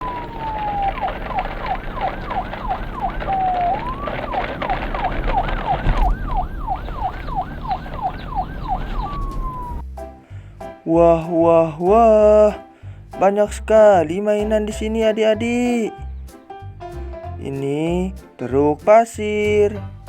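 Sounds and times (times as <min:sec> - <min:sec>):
electronic siren yelping: 0:00.0 - 0:09.8
low rumble: 0:00.0 - 0:12.4.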